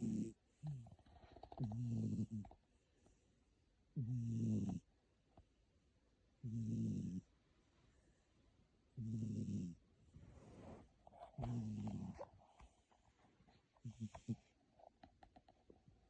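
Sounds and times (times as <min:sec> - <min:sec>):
cat snoring: 0:00.0 - 0:02.4, 0:04.0 - 0:04.8, 0:06.4 - 0:07.3, 0:09.0 - 0:12.3, 0:13.8 - 0:14.5.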